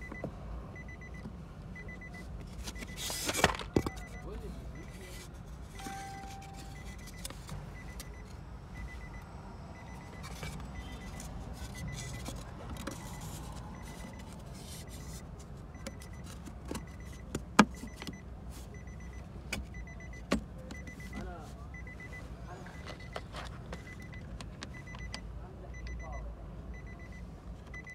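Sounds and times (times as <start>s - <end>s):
faint high beep: 3.8s - 5.1s, 5.8s - 12.3s, 12.9s - 15.2s, 20.8s - 23.2s, 24.8s - 27.9s.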